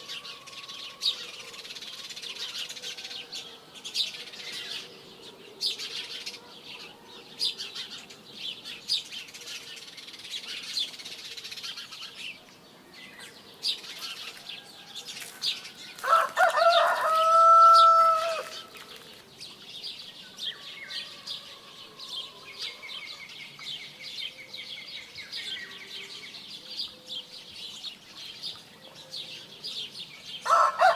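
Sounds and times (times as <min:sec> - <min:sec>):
small birds chirping: 0:00.0 - 0:30.7
rooster crowing: 0:16.0 - 0:18.6, 0:20.5 - 0:22.9, 0:30.4 - 0:30.9.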